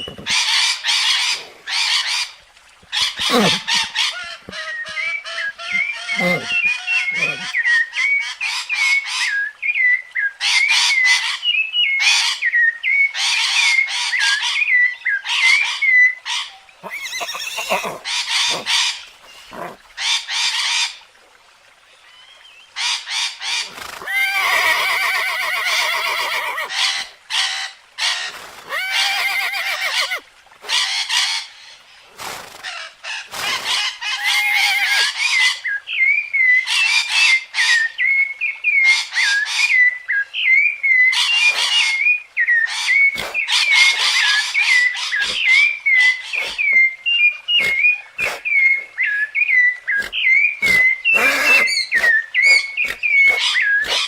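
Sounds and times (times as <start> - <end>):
drawn-out animal calls: 3.0 - 4.8, 5.6 - 7.6, 16.8 - 19.8, 24.0 - 26.7, 28.6 - 30.2, 50.0 - 51.8.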